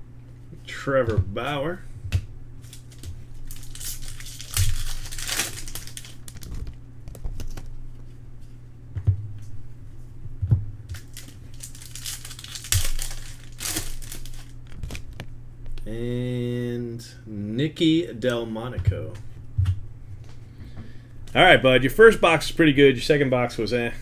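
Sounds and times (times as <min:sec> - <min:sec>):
low hum: 0:00.0 - 0:24.0
card wrappers crinkling and tearing: 0:02.6 - 0:07.8, 0:11.0 - 0:15.3.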